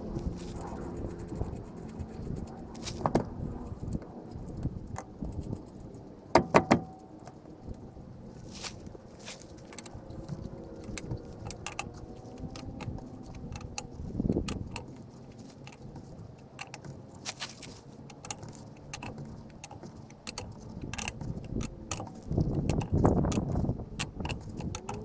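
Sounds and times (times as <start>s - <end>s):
dull knock: 6.4s - 6.9s
metallic clicks of hand tools: 9.6s - 25.0s.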